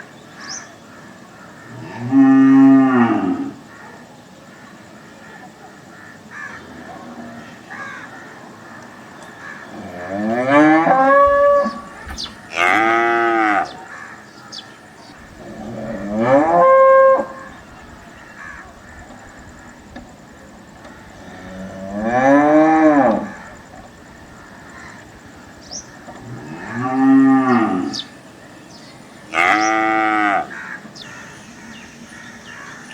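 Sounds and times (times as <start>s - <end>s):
cattle mooing: 9.8s - 11.9s, 12.5s - 13.8s, 15.4s - 17.4s, 26.2s - 28.1s, 29.3s - 32.3s.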